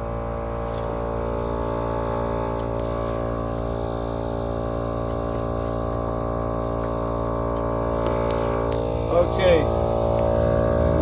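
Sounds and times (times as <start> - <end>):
air compressor buzzing: 0.0 - 11.0.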